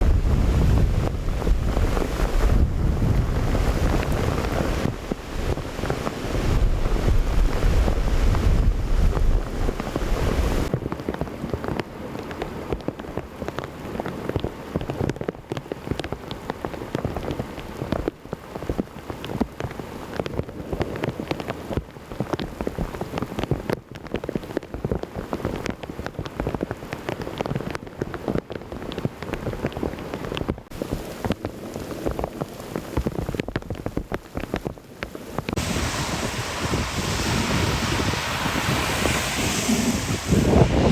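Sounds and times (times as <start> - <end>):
heavy rain pouring: 0.0 - 10.7, 29.8 - 40.9
close raindrop impacts: 10.6 - 36.2
loud low rumble: 35.6 - 40.9.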